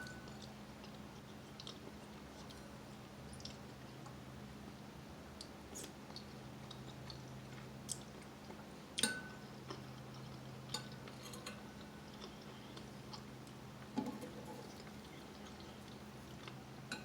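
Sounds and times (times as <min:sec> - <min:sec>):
soft chewing: 0:00.0 - 0:04.3, 0:05.3 - 0:17.0
low steady hum: 0:00.0 - 0:17.0
spoon clinking against bowl: 0:09.0 - 0:09.4.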